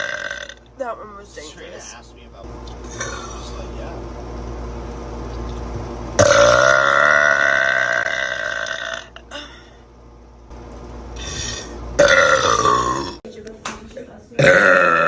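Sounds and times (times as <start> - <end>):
woman burping: 0.0 - 0.7, 6.2 - 9.8, 11.2 - 13.2, 14.4 - 15.0.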